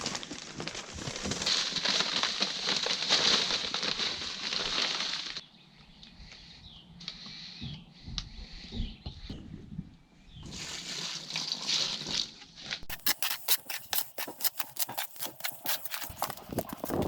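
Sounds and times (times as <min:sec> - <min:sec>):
rough scraping noise: 0:12.8 - 0:17.0.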